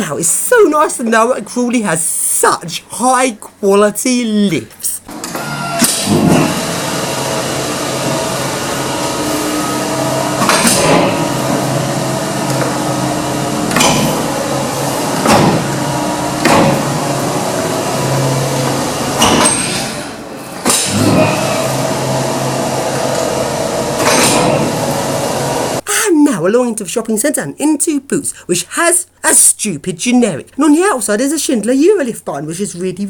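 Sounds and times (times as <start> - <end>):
lift motor humming: 5.1 - 25.8
sharp knocks: 13.7 - 14.2, 15.2 - 15.7, 16.4 - 16.9.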